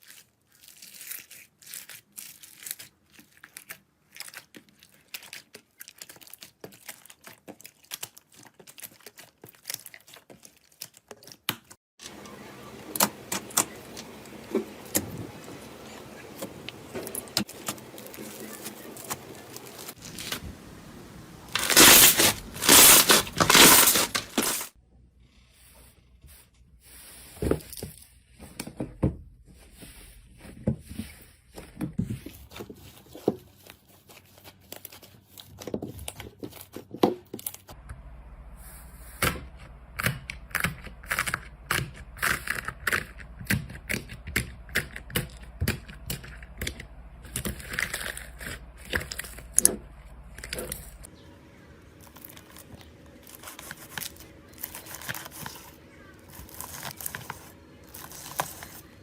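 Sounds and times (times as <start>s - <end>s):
slime crackling: 0.0s - 11.5s, 12.3s - 24.7s.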